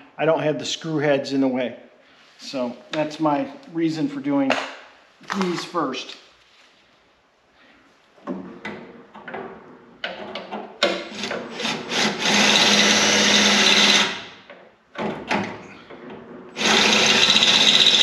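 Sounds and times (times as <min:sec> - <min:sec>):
drill boring through sheet metal: 0:11.0 - 0:14.4, 0:16.6 - 0:18.0.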